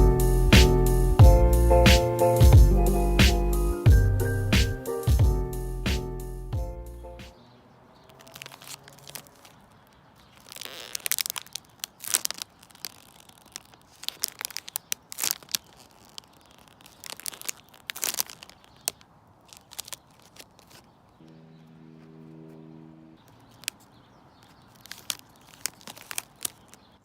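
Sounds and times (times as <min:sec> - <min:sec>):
paper crinkling and crunching: 0:08.0 - 0:21.3, 0:23.2 - 0:27.0.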